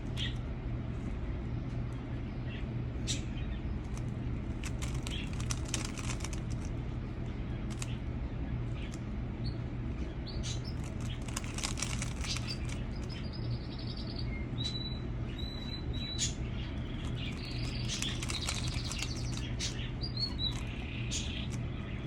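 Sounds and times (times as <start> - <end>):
birds chirping: 0.0 - 22.0
puzzle cube clicking: 4.6 - 6.7, 10.8 - 12.8, 17.3 - 19.4.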